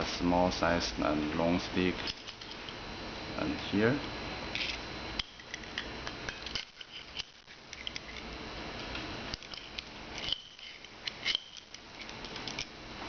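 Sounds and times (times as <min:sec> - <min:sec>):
steady hiss: 0:00.0 - 0:13.0
metal clicks and scrapes: 0:04.6 - 0:08.3, 0:09.3 - 0:12.7.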